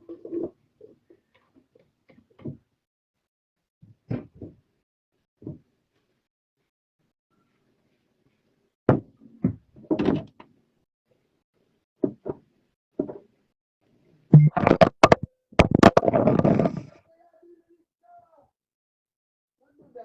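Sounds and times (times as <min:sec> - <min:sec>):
knocks and thuds: 0:14.4 - 0:16.7.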